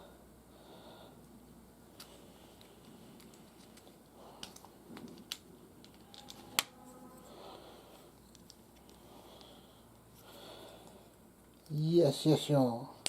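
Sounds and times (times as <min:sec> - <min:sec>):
plastic parts snapping together: 0:03.2 - 0:06.7.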